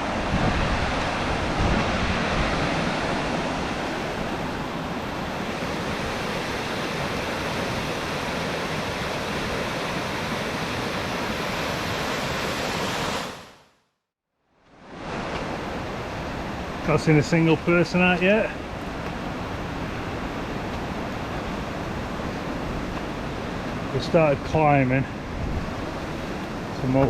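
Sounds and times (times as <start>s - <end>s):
wind buffeting microphone: 0.0s - 8.1s, 18.6s - 27.0s
running water rushing: 0.0s - 13.6s, 14.8s - 27.0s.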